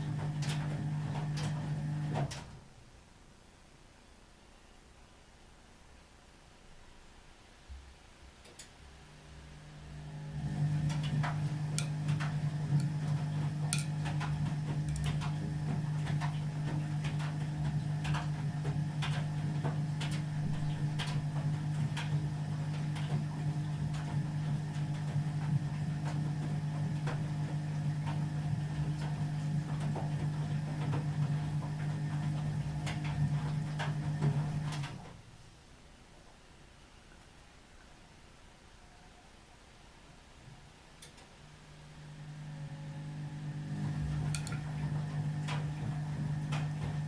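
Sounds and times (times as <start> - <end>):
drain pump humming: 0.0 - 2.6, 9.0 - 35.1, 41.6 - 47.0.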